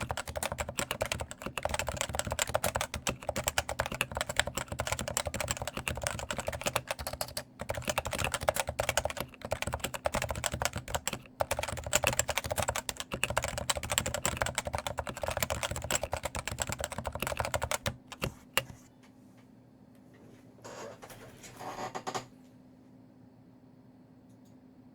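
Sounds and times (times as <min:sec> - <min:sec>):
rapid keyboard typing: 0:00.0 - 0:18.8.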